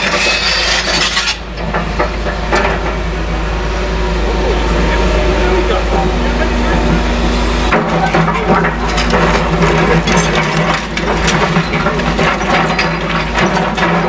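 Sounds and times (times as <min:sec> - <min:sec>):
excavator diesel engine running: 0:00.0 - 0:14.0
rubble cracking and crunching: 0:07.8 - 0:14.0.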